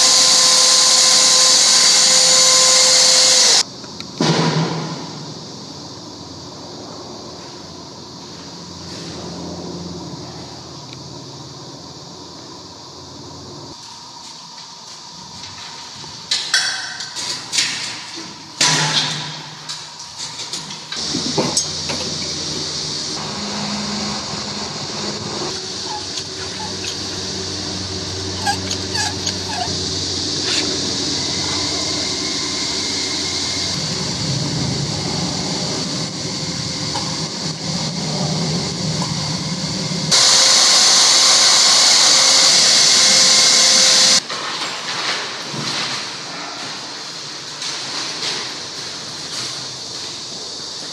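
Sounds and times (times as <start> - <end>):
electric motor tool running: 0.0 - 3.6, 21.0 - 44.2.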